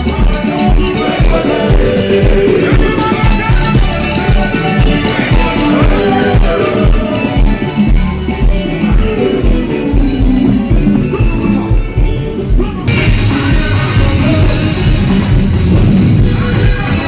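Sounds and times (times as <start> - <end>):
drum kit steady beat: 0.0 - 17.0
electric guitars: 0.0 - 17.0
cymbals: 12.9 - 17.0.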